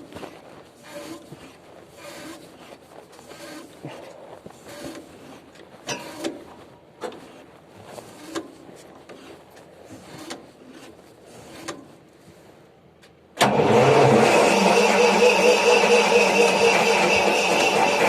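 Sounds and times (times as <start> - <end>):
diesel generator engine running: 13.4 - 18.0.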